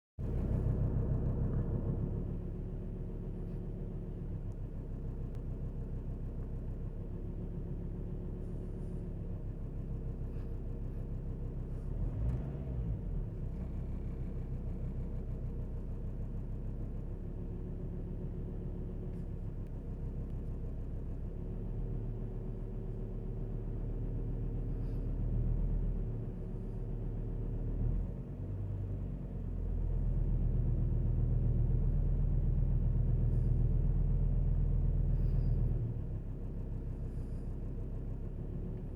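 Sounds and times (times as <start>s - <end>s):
diesel engine revving: 10.3s - 15.2s.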